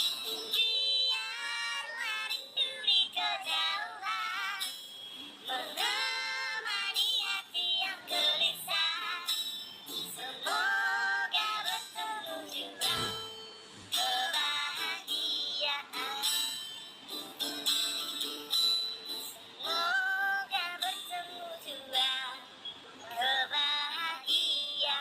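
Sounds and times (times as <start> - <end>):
high wavering singing voices: 0.0 - 17.2, 18.3 - 25.0
jingling accompaniment: 0.0 - 19.9.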